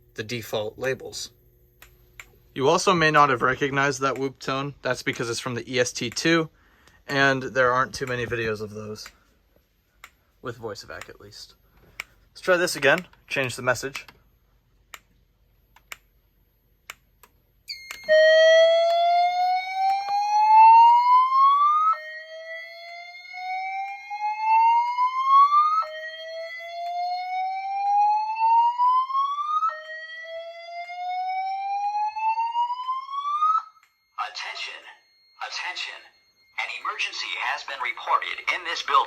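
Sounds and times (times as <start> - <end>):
faint steady high tone: 17.7 - 18.4, 33.6 - 39.0
rising whoop alarm tone: 17.7 - 36.4.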